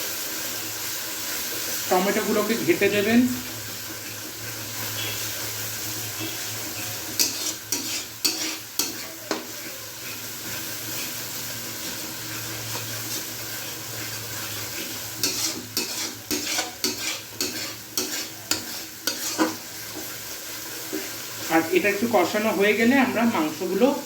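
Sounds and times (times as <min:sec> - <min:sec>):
food sizzling in hot oil: 0:00.0 - 0:24.0
spatula scraping and knocking pan: 0:06.2 - 0:09.7, 0:14.7 - 0:20.2.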